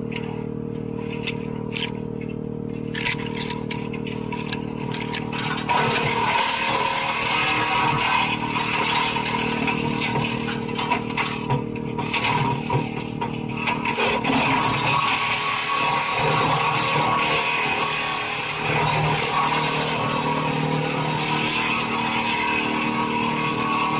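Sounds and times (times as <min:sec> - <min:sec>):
branches being chipped: 0:00.0 - 0:17.6
wood chipper droning: 0:00.0 - 0:23.9.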